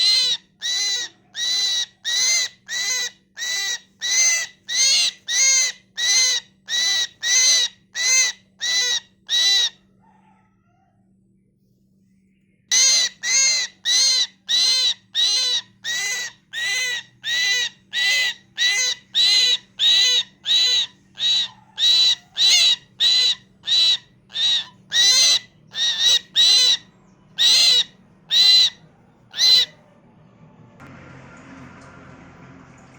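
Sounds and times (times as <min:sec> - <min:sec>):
mynah calling: 0:12.7 - 0:26.8, 0:27.4 - 0:29.7.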